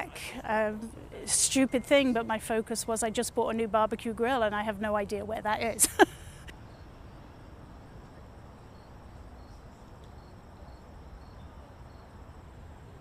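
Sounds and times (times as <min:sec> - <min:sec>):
insect chirping: 0:06.5 - 0:12.4.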